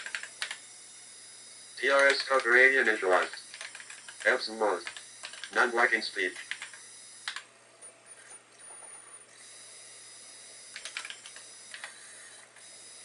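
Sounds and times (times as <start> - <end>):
keyboard clicks: 0.0 - 0.6, 1.9 - 5.6, 6.3 - 7.4, 10.7 - 12.0
thin high whine: 0.0 - 13.0.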